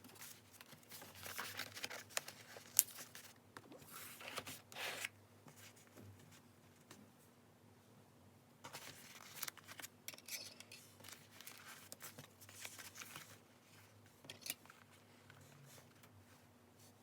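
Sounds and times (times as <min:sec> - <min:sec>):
paper rustling and crackling: 0:00.0 - 0:06.0, 0:08.7 - 0:09.9, 0:10.8 - 0:16.2.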